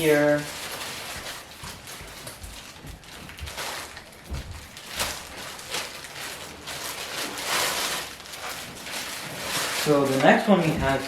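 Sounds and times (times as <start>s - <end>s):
soft rustling: 0.0s - 11.0s
vacuum attachments knocking and clicking: 10.2s - 11.0s.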